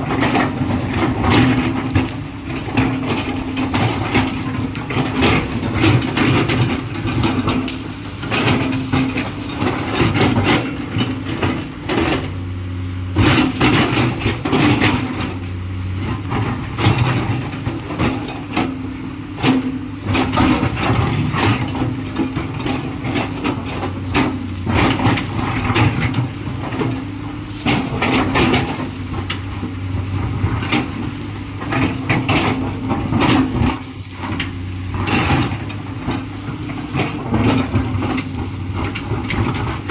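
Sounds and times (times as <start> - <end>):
clanks and scrapes of machine: 0.0 - 39.9
excavator diesel engine running: 0.0 - 39.9.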